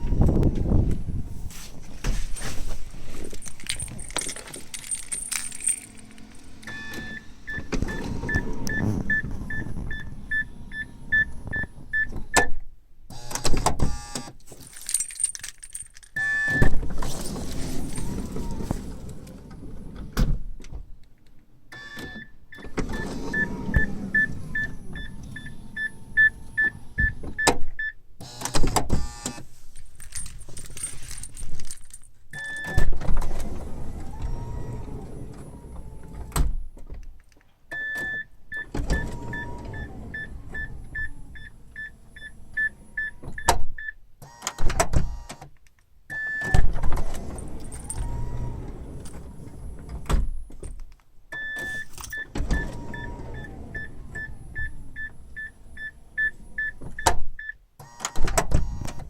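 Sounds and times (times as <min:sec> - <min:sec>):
sliding door motor whine: 0:04.8 - 0:11.2, 0:16.2 - 0:20.2, 0:21.8 - 0:27.0, 0:32.6 - 0:36.4, 0:38.6 - 0:43.0, 0:46.8 - 0:50.1, 0:51.6 - 0:56.6
warning buzzer beeps: 0:57.9 - 0:59.0.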